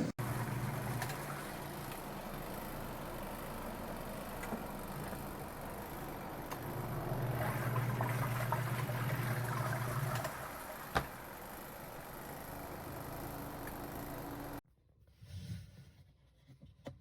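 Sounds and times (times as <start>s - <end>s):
washing machine motor humming: 0.0s - 14.6s
water churning and splashing: 4.6s - 12.9s.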